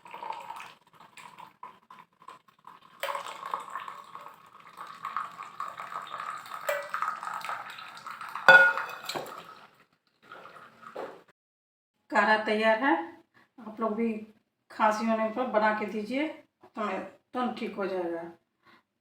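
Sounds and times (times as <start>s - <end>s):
liquid pouring: 0.0s - 9.7s
sharp clink of metal or glass: 8.5s - 9.2s
utensils clinking: 8.5s - 9.4s.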